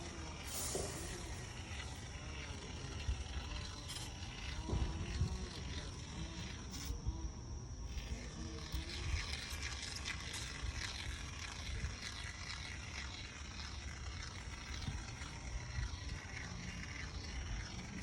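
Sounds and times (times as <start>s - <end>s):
glue gun hissing: 0.0s - 7.0s.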